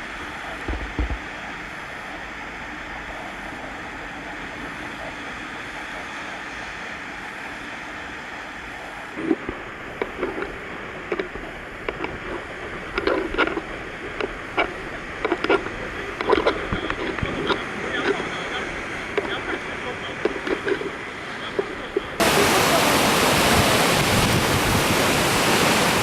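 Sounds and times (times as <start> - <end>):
heavy waves rushing: 0.0 - 26.0
irregular knocks and clatters: 0.6 - 1.3.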